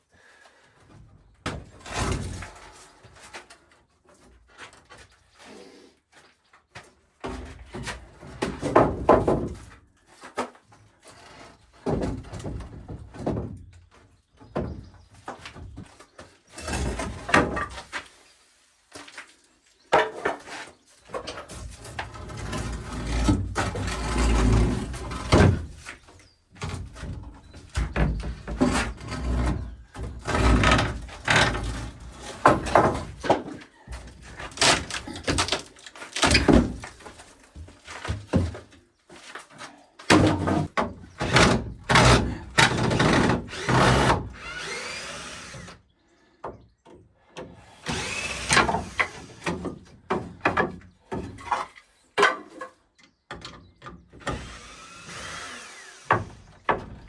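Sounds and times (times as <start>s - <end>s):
wooden boards knocking and clattering: 7.2s - 18.0s, 19.9s - 44.3s, 46.4s - 55.5s, 56.1s - 57.0s.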